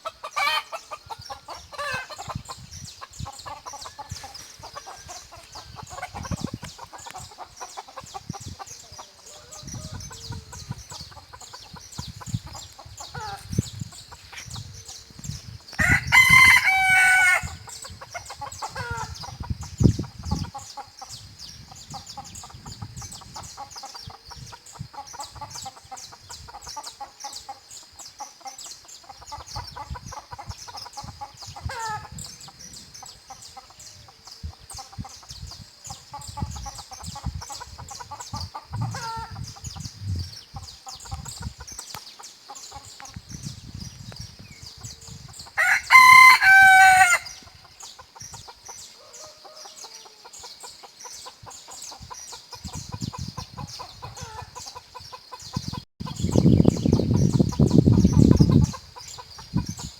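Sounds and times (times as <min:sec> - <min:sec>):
hens clucking: 0:00.0 - 0:14.7, 0:15.8 - 0:21.1, 0:28.2 - 0:32.6, 0:36.1 - 0:43.2
small birds chirping: 0:00.0 - 0:59.9
rooster crowing: 0:15.8 - 0:17.7, 0:45.6 - 0:47.4.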